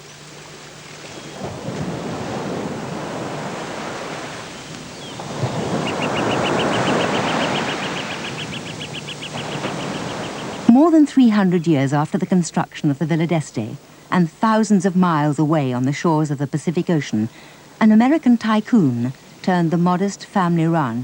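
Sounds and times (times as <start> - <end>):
fast high chirps: 5.8 - 10.7.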